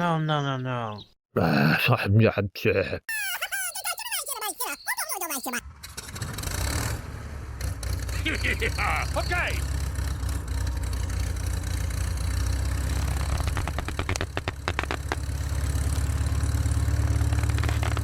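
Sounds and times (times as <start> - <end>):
engine idling: 7.6 - 18.0
sharp clicks: 13.2 - 15.3, 17.1 - 18.0.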